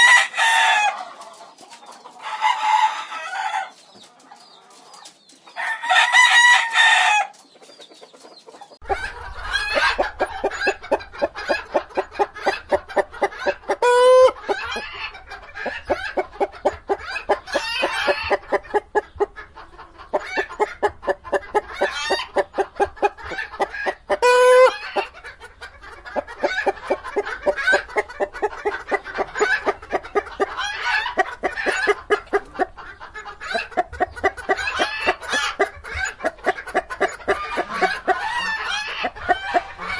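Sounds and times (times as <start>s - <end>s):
chickens clucking: 0.0s - 39.9s
rooster crowing: 5.6s - 7.3s, 13.7s - 14.4s, 24.2s - 25.0s
chicken squawking: 8.8s - 39.9s.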